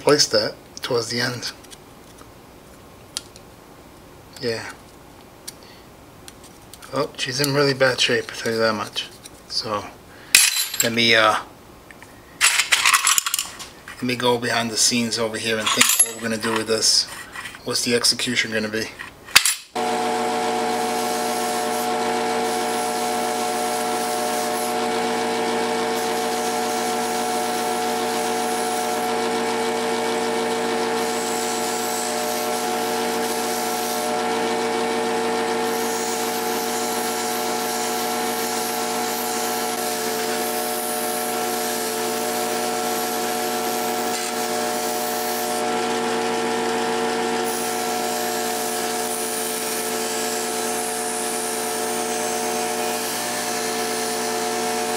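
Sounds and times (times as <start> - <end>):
power tool motor humming: 19.8 - 54.9.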